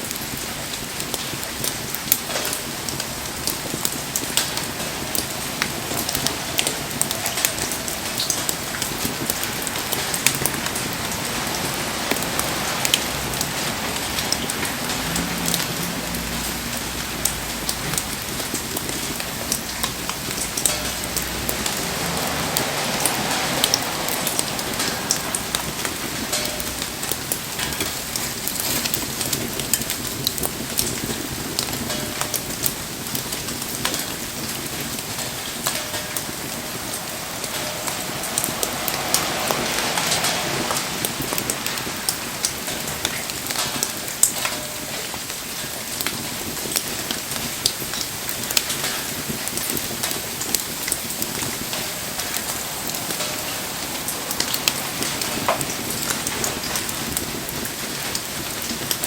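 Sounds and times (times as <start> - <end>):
rain pattering: 0.0 - 59.0
wood fire crackling: 0.0 - 59.0.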